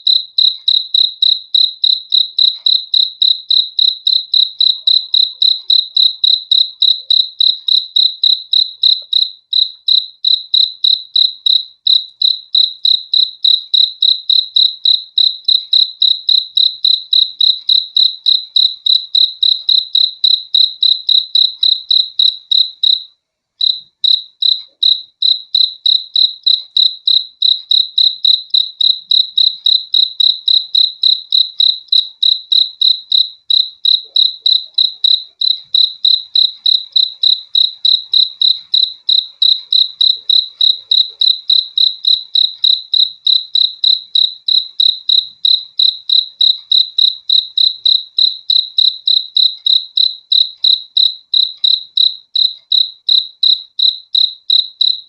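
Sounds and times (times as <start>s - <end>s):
cricket chirping: 0.0s - 55.0s.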